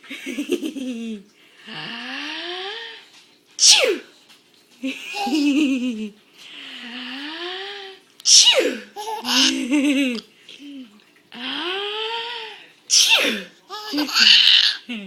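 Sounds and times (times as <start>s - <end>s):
woman sneezing: 3.6s - 4.1s, 8.3s - 9.5s, 12.9s - 13.5s
baby laughing: 5.0s - 5.8s, 8.9s - 10.2s, 13.7s - 14.9s
baby squealing: 13.7s - 14.8s.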